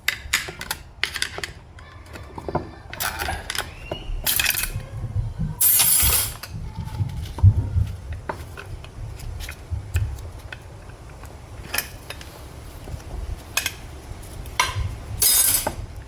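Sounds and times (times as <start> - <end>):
metal clinks of tools and parts: 3.0 - 4.8, 5.6 - 6.5, 14.7 - 15.8.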